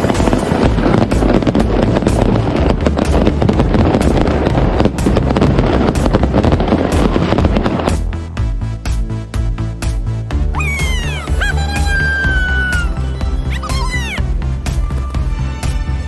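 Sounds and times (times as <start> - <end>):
fireworks bursting: 0.0 - 8.1
music with low bass: 0.0 - 16.0.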